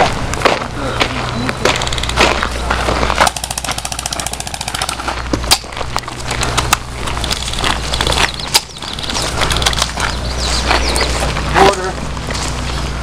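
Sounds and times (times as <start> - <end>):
airsoft gun full-auto burst: 3.2 - 5.0.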